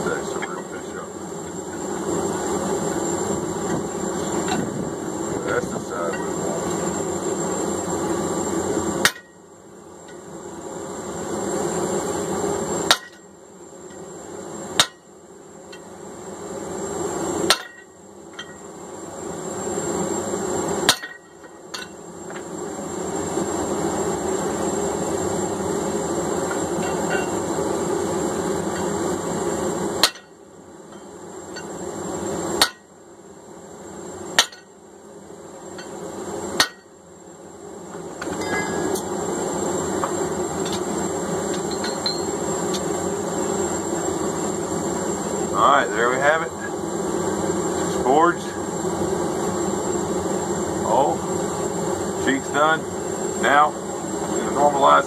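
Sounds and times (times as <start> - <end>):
hammer striking hot steel: 6.1 - 6.8, 9.0 - 10.2, 12.8 - 14.0, 14.7 - 15.1, 17.4 - 18.7, 20.8 - 22.4, 26.5 - 27.4, 30.0 - 31.7, 32.6 - 32.9, 34.3 - 34.8, 35.7 - 36.0, 36.6 - 37.0, 38.2 - 39.1, 41.5 - 42.9.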